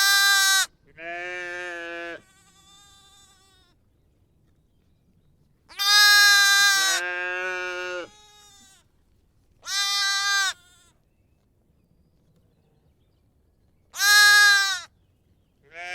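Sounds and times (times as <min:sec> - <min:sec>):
lamb bleating: 0:00.0 - 0:03.8, 0:05.7 - 0:08.9, 0:09.6 - 0:11.0, 0:14.0 - 0:14.9.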